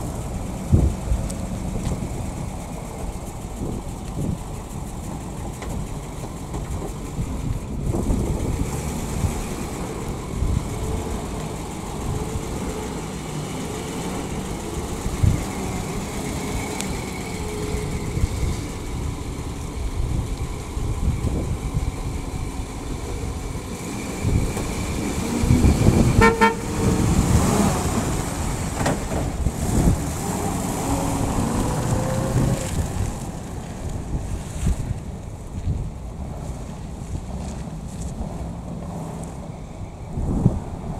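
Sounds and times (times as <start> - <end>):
bus engine running: 0.0 - 40.9
horn honk: 25.9 - 27.1.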